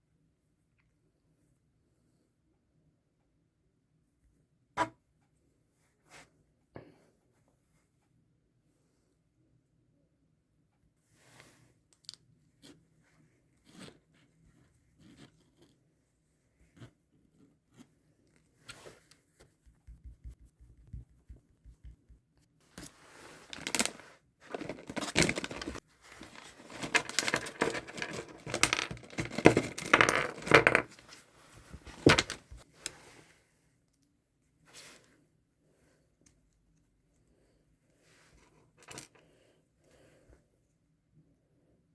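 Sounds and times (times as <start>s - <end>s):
wrapping rustling and tearing: 22.8s - 29.9s.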